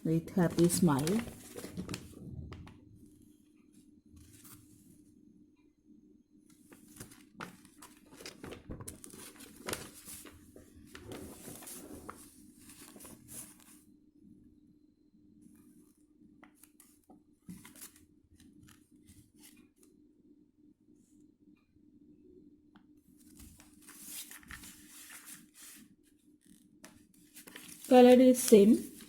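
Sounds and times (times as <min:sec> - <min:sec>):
paper and packaging rustling: 0:00.0 - 0:02.3, 0:06.7 - 0:13.8, 0:23.4 - 0:25.8, 0:27.3 - 0:29.0.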